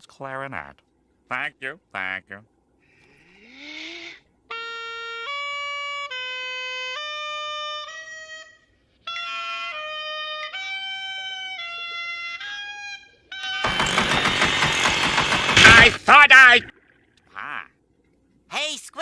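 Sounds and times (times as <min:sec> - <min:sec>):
clarinet slow melody: 0:04.5 - 0:13.6.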